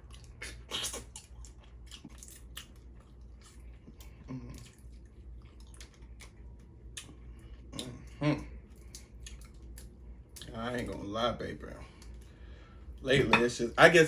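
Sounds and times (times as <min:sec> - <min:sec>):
wet chewing and mouth smacks: 0:00.0 - 0:10.5.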